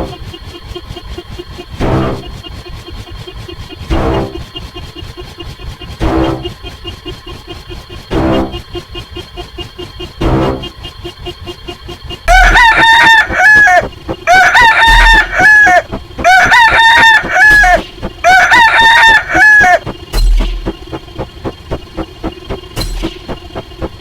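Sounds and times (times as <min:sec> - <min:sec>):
background beat of ticks: 0:00.0 - 0:24.0
rooster crowing: 0:12.3 - 0:19.8.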